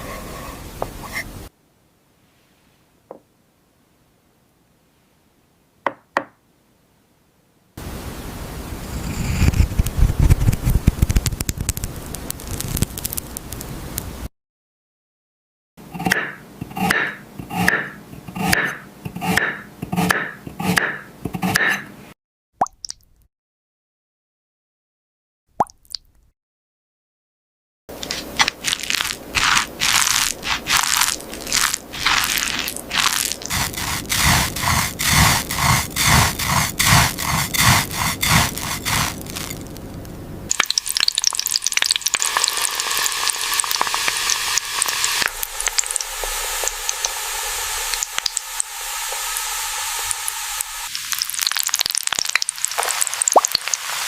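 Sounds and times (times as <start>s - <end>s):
crackling sizzle: 7.8s - 14.3s, 27.9s - 54.0s
rhythmic crunching and scraping: 27.9s - 40.1s.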